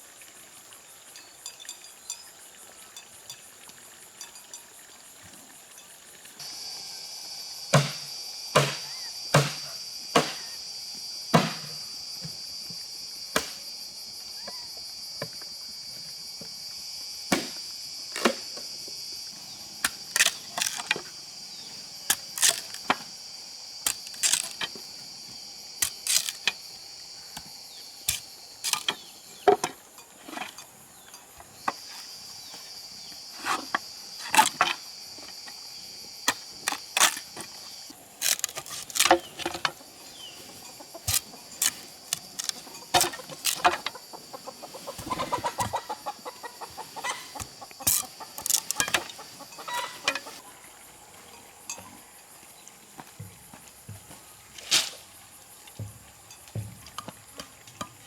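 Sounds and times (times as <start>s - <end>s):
high-pitched insect chorus: 0.0s - 58.0s
sharp knocks: 7.7s - 8.8s, 9.4s - 10.4s.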